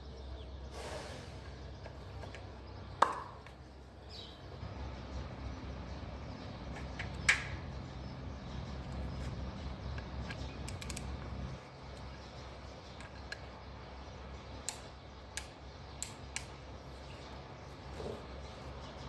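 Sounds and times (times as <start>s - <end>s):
sharp clicks and taps: 14.6s - 16.6s.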